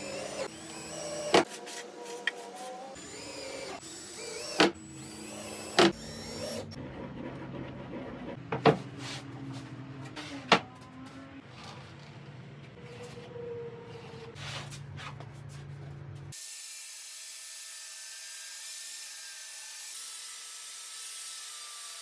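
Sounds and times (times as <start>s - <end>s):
cordless drill whirring: 0.0s - 1.5s, 3.0s - 6.8s.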